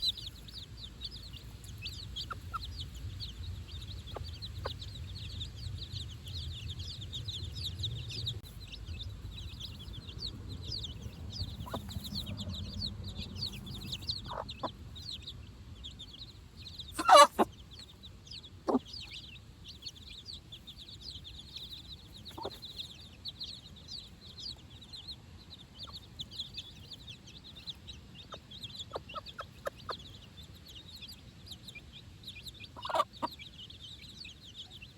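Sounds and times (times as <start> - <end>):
chicks peeping: 0.0 - 34.9
hen calling: 16.9 - 17.9, 32.8 - 33.4.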